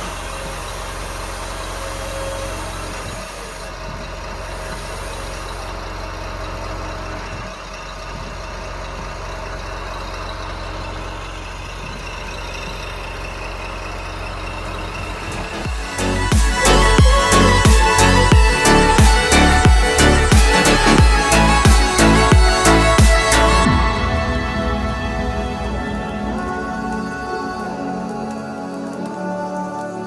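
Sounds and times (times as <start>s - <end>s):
model machines mechanical hum: 0.0s - 23.7s.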